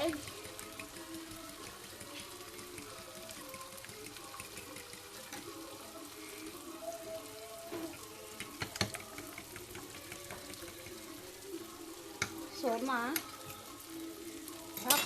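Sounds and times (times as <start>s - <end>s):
fork tapping against bowl: 0.0s - 5.5s, 7.9s - 11.1s, 12.2s - 12.4s
eggs beaten in a bowl: 0.0s - 15.0s.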